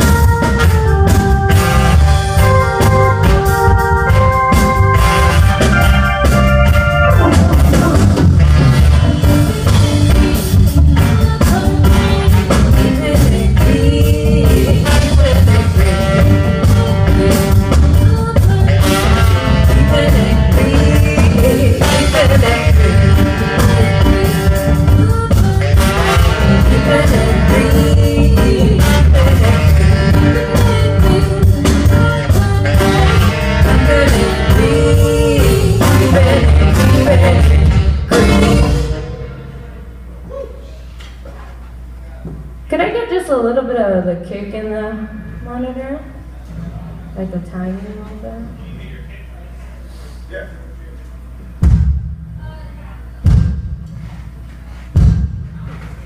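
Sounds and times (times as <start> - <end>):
live rock band playing: 0.0 - 40.1.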